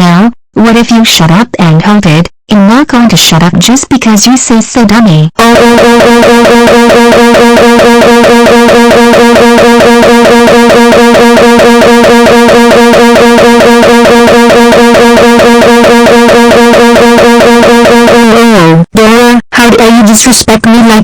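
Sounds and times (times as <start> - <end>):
synthesized voice wailing: 5.4 - 19.8.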